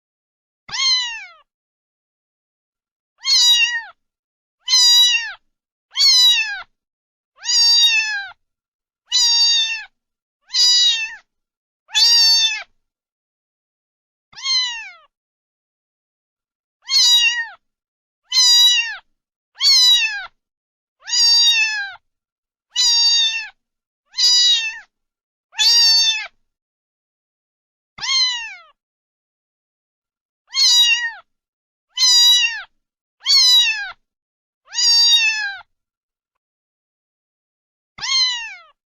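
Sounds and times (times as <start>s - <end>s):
cat meowing: 0.7s - 1.5s, 3.2s - 4.0s, 4.6s - 6.7s, 7.4s - 8.4s, 9.1s - 11.3s, 11.9s - 12.7s, 14.3s - 15.1s, 16.8s - 17.6s, 18.3s - 20.4s, 21.0s - 22.0s, 22.7s - 24.9s, 25.6s - 26.4s, 28.0s - 28.8s, 30.5s - 31.3s, 31.9s - 34.0s, 34.7s - 35.7s, 38.0s - 38.8s.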